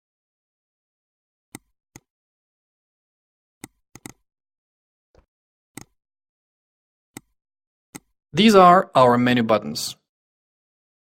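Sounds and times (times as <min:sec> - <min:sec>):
computer mouse clicking: 0:01.5 - 0:02.1, 0:03.6 - 0:04.2, 0:05.2 - 0:06.0.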